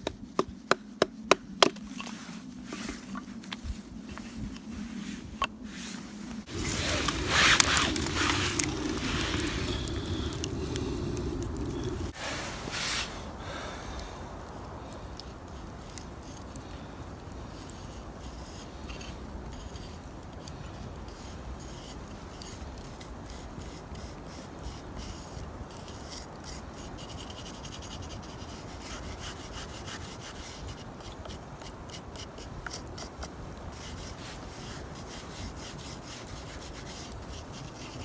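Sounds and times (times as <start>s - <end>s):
scraping and scratching: 1.6s - 13.3s
small scratches and ticks: 1.8s - 12.2s, 14.5s - 38.0s.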